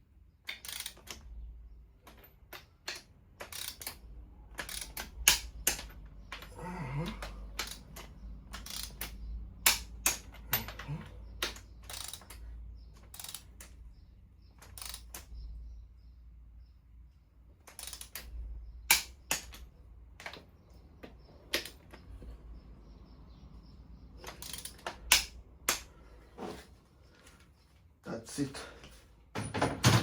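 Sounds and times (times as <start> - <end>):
ratchet wrench clicking: 0.5 - 1.3, 2.1 - 6.5, 7.2 - 10.5, 11.4 - 13.8, 14.6 - 15.4, 17.6 - 18.3, 24.2 - 25.9.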